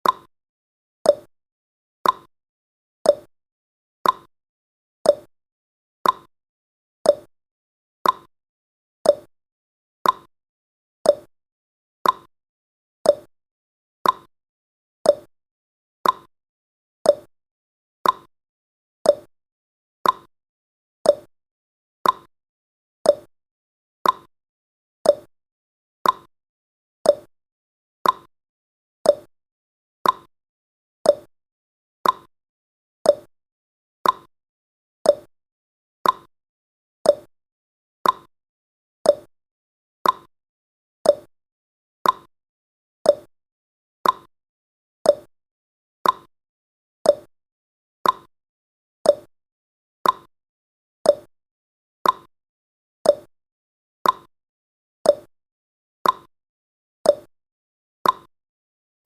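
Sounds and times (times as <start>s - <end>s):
timer ticking: 0.0s - 0.3s, 1.1s - 1.3s, 2.0s - 2.3s, 3.1s - 3.3s, 4.0s - 4.3s, 5.1s - 5.3s, 6.0s - 6.3s, 7.1s - 7.3s, 8.0s - 8.3s, 9.1s - 9.3s, 10.0s - 10.3s, 11.1s - 11.3s, 12.0s - 12.3s, 13.1s - 13.3s, 14.0s - 14.3s, 15.1s - 15.3s, 16.0s - 16.3s, 17.1s - 17.3s, 18.0s - 18.3s, 19.1s - 19.3s, 20.0s - 20.3s, 21.1s - 21.3s, 22.0s - 22.3s, 23.1s - 23.3s, 24.0s - 24.3s, 25.0s - 25.3s, 26.0s - 26.3s, 27.1s - 27.3s, 28.0s - 28.3s, 29.1s - 29.3s, 30.0s - 30.3s, 31.1s - 31.3s, 32.0s - 32.3s, 33.1s - 33.3s, 34.0s - 34.3s, 35.1s - 35.3s, 36.0s - 36.3s, 37.1s - 37.3s, 38.0s - 38.3s, 39.1s - 39.3s, 40.0s - 40.3s, 41.0s - 41.3s, 42.0s - 42.3s, 43.1s - 43.3s, 44.0s - 44.3s, 45.1s - 45.3s, 46.0s - 46.3s, 47.1s - 47.3s, 48.0s - 48.3s, 49.1s - 49.3s, 50.0s - 50.3s, 51.1s - 51.3s, 52.0s - 52.3s, 53.1s - 53.3s, 54.0s - 54.3s, 55.1s - 55.3s, 56.0s - 56.3s, 57.1s - 57.3s, 58.0s - 58.3s.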